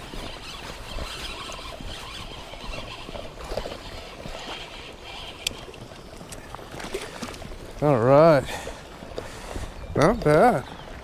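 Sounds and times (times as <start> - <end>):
water flowing and splashing: 0.0 - 11.0
faint clicks: 4.4 - 7.4.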